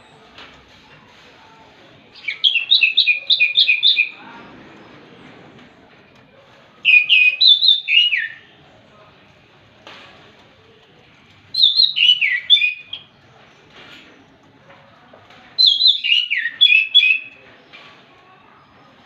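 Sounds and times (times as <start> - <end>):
thrush singing whistled notes: 6.9 - 8.4, 11.6 - 13.0, 15.6 - 17.3.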